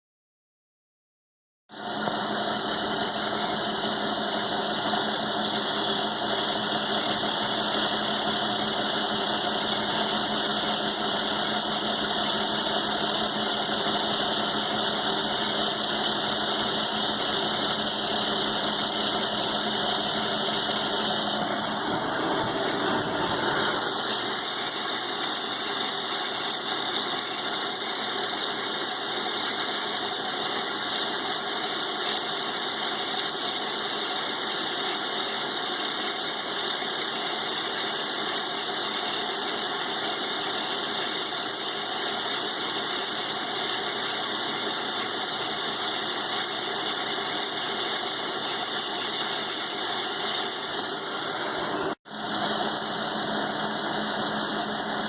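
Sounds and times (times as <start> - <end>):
milling machine cutting steel: 1.8 - 55.0.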